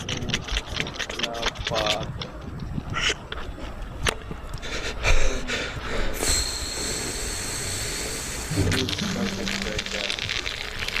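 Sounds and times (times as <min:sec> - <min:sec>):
high-pitched whistling hiss: 0:06.2 - 0:10.2.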